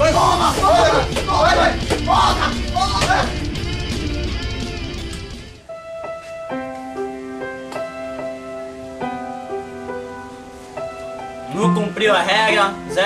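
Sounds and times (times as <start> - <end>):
loud dense music: 0.0 - 5.6
soft keyboard melody: 5.6 - 13.0.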